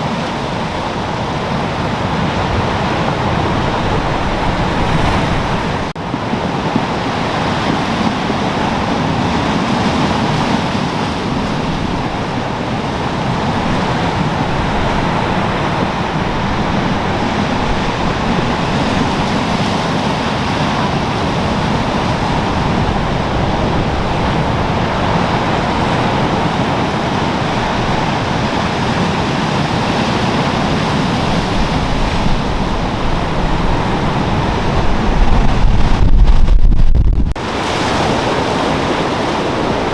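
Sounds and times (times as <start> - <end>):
waves breaking: 0.0 - 39.9
wind: 0.0 - 39.9.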